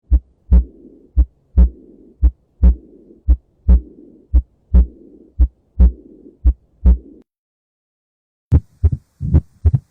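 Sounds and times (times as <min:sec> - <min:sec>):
heartbeat: 0:00.0 - 0:07.2, 0:08.5 - 0:09.9
soft whooshing heart murmur: 0:00.1 - 0:07.2.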